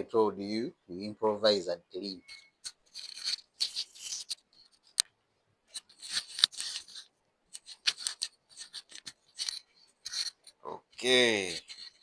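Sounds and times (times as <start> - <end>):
scratchy brushing strokes: 2.3 - 4.9, 5.8 - 10.6.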